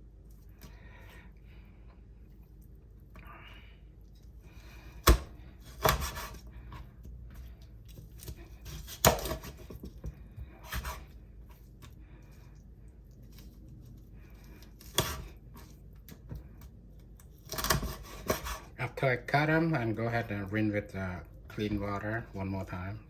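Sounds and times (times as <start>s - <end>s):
knife chopping on cutting board: 5.0s - 6.4s, 8.2s - 10.0s, 10.6s - 11.0s, 14.9s - 15.3s, 17.5s - 18.7s.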